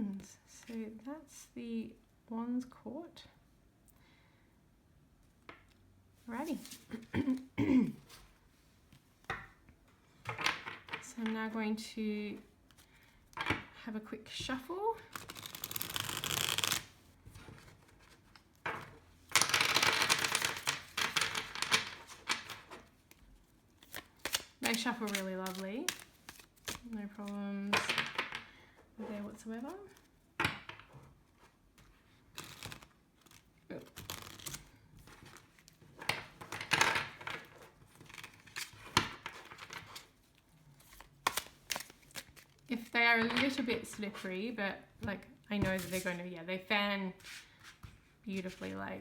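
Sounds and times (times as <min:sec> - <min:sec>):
cards being shuffled: 0:15.1 - 0:18.5, 0:19.3 - 0:28.4, 0:31.4 - 0:40.2, 0:40.8 - 0:42.6, 0:45.6 - 0:46.2.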